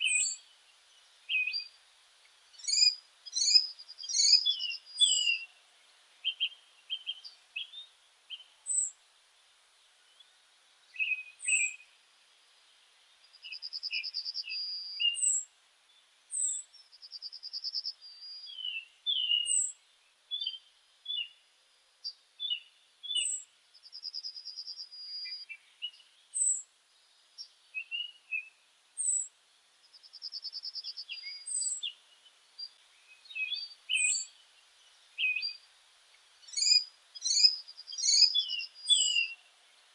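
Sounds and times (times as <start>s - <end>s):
low bird chirps: 36.4s - 39.5s.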